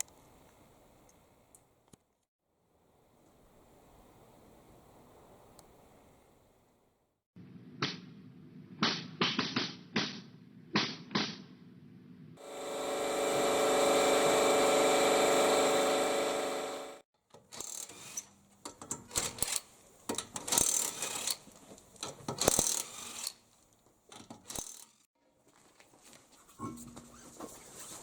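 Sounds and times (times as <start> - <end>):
ratchet clicks: 18.8 - 21.4, 22.4 - 23.4, 24.2 - 25.0.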